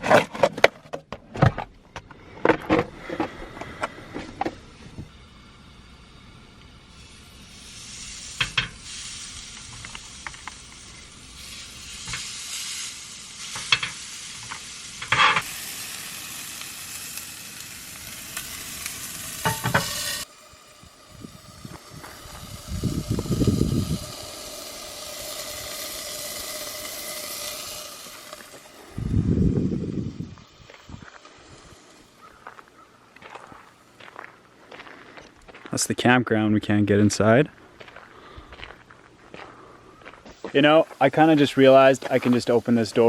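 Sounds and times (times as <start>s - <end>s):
sausages sizzling in a pan: 4.6s - 34.0s, 40.3s - 43.0s.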